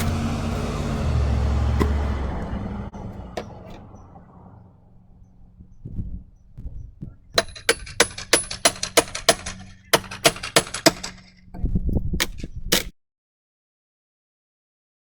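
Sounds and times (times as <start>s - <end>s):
hammer driving nails into wood: 7.2s - 11.4s.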